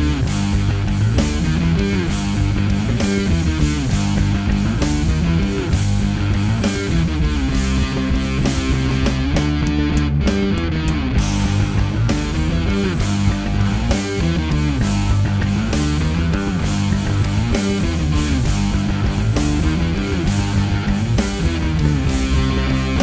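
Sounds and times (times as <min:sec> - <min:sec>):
instrumental electronic music: 0:11.2 - 0:23.0.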